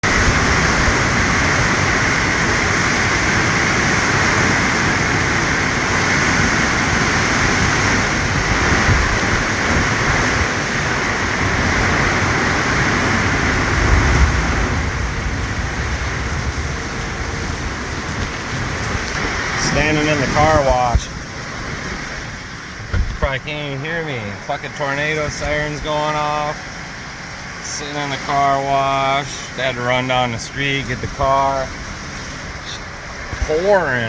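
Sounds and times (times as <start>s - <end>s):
heavy rain pouring: 0.0s - 34.0s
low rumble: 7.9s - 26.7s.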